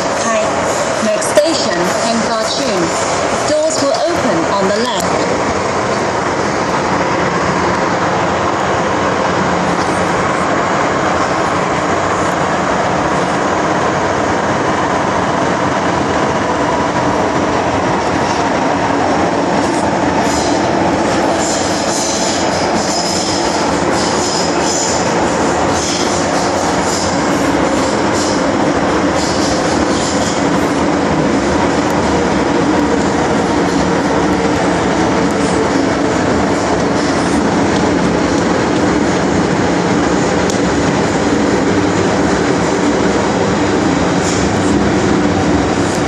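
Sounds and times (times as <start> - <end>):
train wheels rumbling: 0.0 - 46.0.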